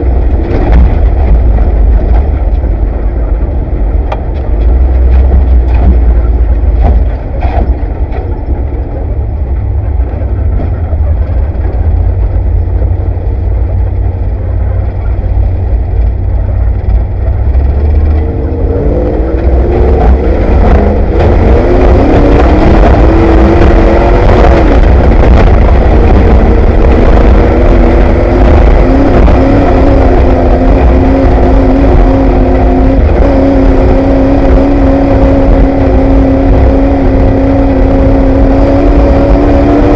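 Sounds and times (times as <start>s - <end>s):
engine rumbling and revving: 0.0s - 39.9s.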